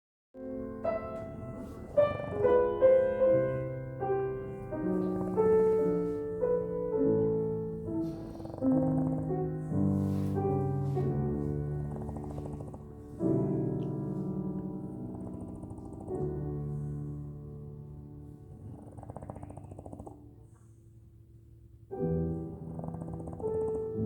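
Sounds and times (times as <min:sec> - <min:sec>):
slow solo piano piece: 0:00.4 - 0:24.0.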